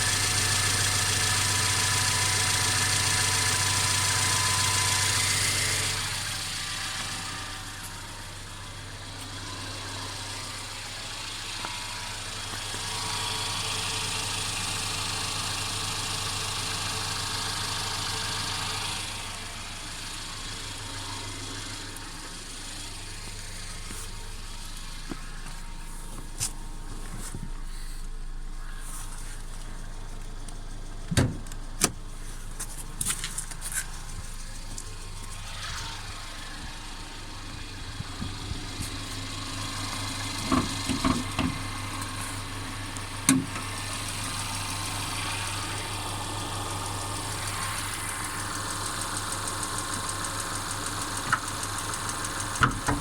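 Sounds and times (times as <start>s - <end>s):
car engine rattling: 0.0s - 53.0s.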